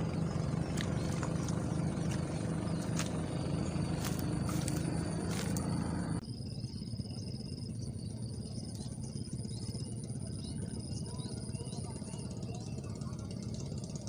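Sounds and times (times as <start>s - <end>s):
low motor drone: 0.0s - 14.0s.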